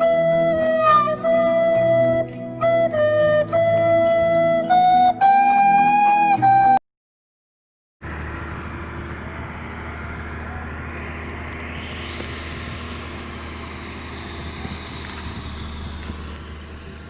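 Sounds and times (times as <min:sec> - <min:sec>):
heavy diesel machinery engine: 0:08.0 - 0:17.0
rising hiss: 0:09.3 - 0:17.0.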